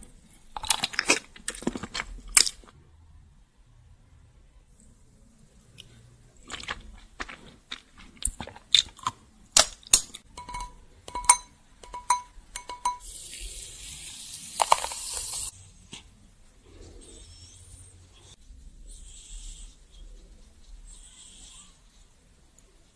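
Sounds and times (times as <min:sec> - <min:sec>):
tableware clicking and clinking: 0:10.3 - 0:13.0.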